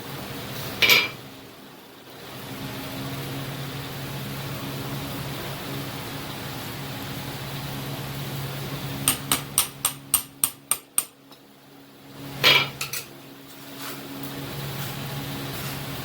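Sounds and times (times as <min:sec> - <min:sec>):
hammer striking steel on anvil: 0:09.0 - 0:11.2.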